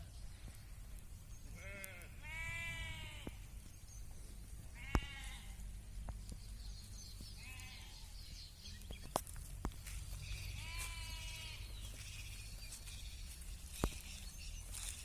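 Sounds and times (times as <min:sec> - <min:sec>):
sheep bleating: 0:01.6 - 0:03.4, 0:04.7 - 0:05.6, 0:07.4 - 0:08.1, 0:10.6 - 0:11.7.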